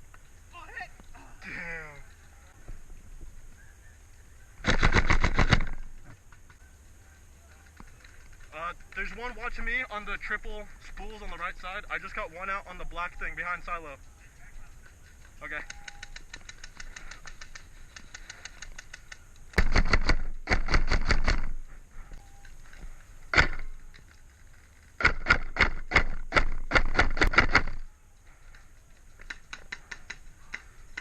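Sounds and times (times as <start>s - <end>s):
airsoft gun shots: 4.6s - 5.9s, 19.6s - 21.6s, 23.3s - 23.8s, 25.0s - 27.8s.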